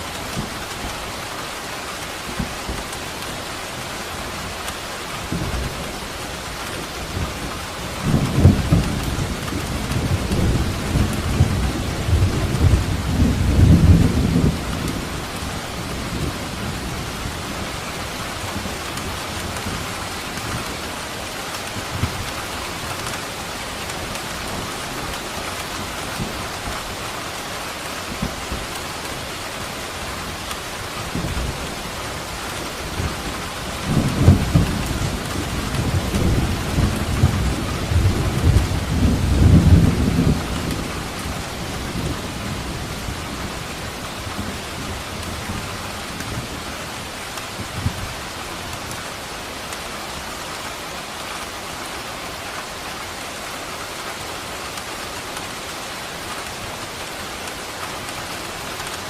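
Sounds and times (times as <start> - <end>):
steady rain: 0.0 - 59.0
rolling thunder: 8.0 - 15.4, 32.9 - 46.6.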